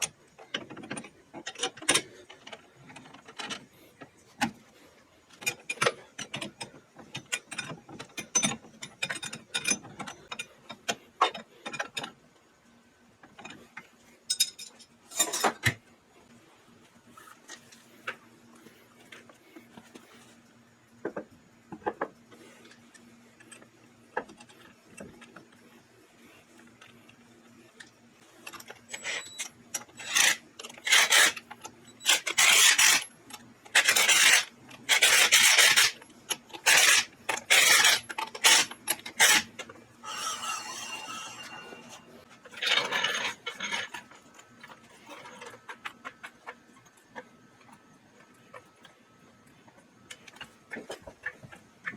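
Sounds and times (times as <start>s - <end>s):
rough rasping scrapes: 39.2s - 42.3s.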